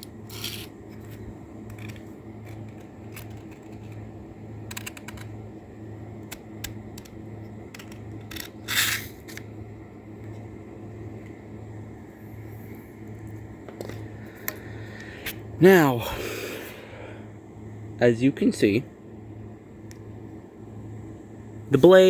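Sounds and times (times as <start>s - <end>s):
steady low hum: 0.0s - 22.0s
blade scrape: 0.3s - 4.0s, 7.8s - 9.4s.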